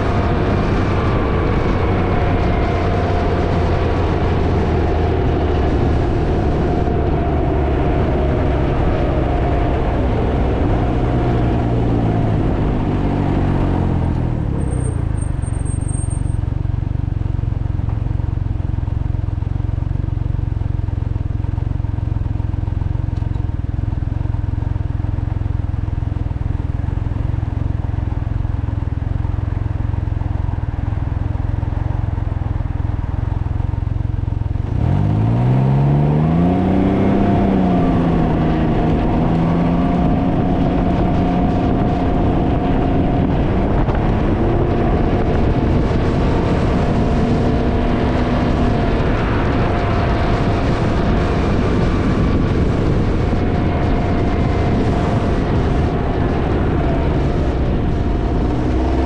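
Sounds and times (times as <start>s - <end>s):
engine rumble: 0.0s - 59.0s
wind buffeting microphone: 34.5s - 59.0s.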